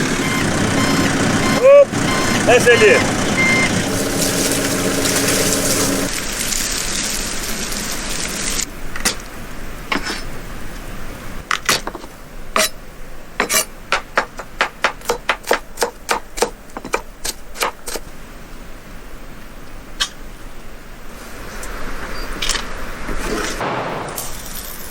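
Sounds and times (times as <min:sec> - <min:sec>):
steady machine noise: 0:00.0 - 0:06.1.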